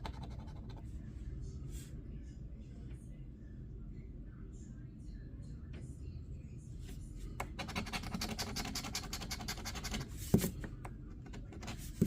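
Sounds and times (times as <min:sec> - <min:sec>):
scratching scratch-off ticket: 0:00.0 - 0:00.8, 0:07.4 - 0:12.0.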